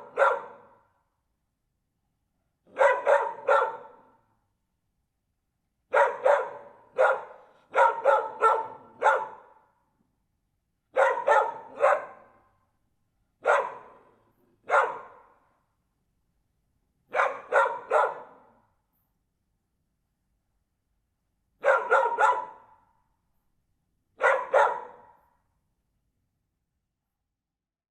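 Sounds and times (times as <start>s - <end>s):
dog barking: 0.0s - 1.0s, 2.6s - 4.3s, 5.9s - 9.8s, 10.9s - 12.6s, 13.4s - 15.6s, 17.1s - 18.7s, 21.6s - 23.0s, 24.2s - 25.4s.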